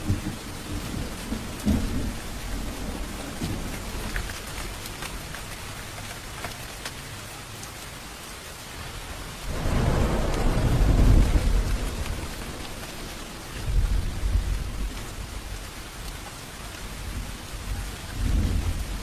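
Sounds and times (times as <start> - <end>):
low thunder rumble: 0.0 - 5.5, 9.4 - 16.1, 16.9 - 19.0
raindrops ticking: 0.0 - 19.0
steady rain falling: 0.0 - 19.0.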